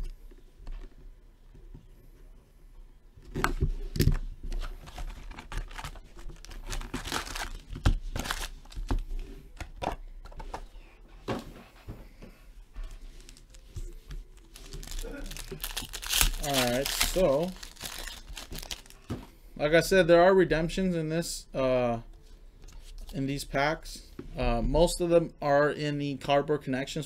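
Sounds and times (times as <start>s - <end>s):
card packs being torn open: 3.9s - 9.0s, 14.3s - 19.1s
wrapper crinkling: 4.8s - 9.0s, 12.9s - 19.1s.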